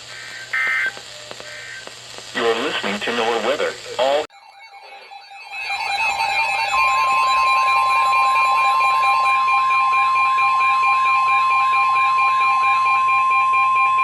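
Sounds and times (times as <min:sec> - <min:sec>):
steady warning alarm tone: 0:04.3 - 0:14.0
warbling electronic alarm: 0:04.3 - 0:14.0.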